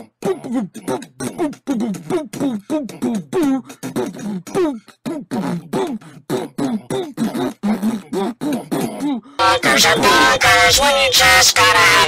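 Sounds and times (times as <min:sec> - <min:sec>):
voice chanting boom: 0:08.4 - 0:12.0.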